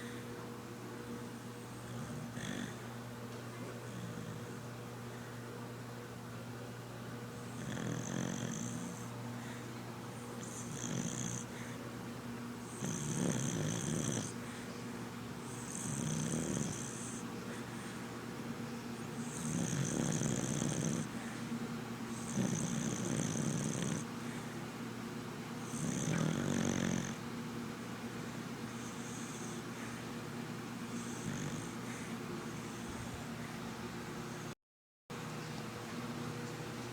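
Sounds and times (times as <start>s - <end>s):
dog snoring: 1.6s - 2.9s, 3.8s - 4.6s, 7.4s - 9.6s, 10.2s - 11.8s, 12.6s - 14.6s, 15.4s - 18.0s, 19.0s - 21.4s, 22.1s - 24.5s, 25.6s - 27.2s, 28.6s - 30.0s, 30.9s - 33.4s.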